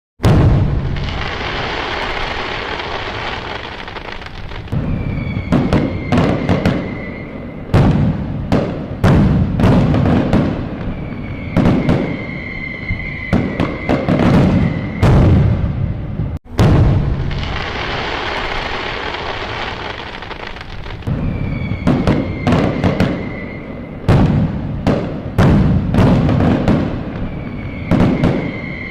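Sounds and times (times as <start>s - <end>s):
firework bangs: 0.2s - 28.9s
firework crackling: 0.2s - 28.9s
heavy firework boom: 0.2s - 28.9s
high falling whistle: 0.9s - 7.8s, 10.8s - 15.9s, 17.3s - 24.1s, 27.1s - 28.9s.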